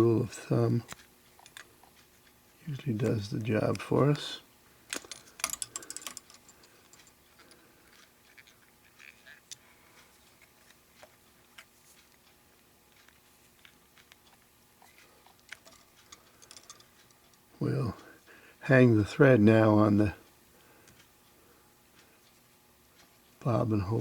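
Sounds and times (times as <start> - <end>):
small clicks of tools: 0.8 - 2.4, 4.9 - 17.4.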